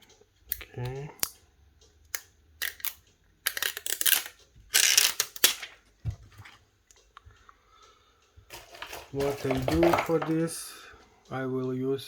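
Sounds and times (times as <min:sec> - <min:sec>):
plastic crinkling: 0:08.5 - 0:10.5.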